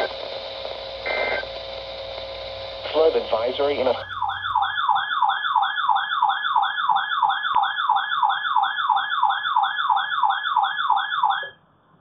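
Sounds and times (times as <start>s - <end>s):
electronic alert siren warbling: 4.0s - 11.6s.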